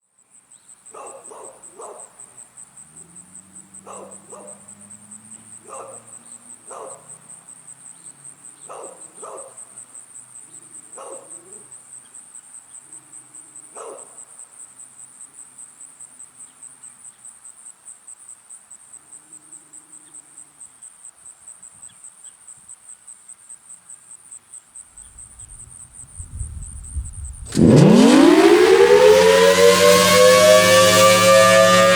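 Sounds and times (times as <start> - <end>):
crickets chirping: 0.2 - 27.5
short faint sounds: 25.0 - 28.6
low rumble: 25.0 - 29.3.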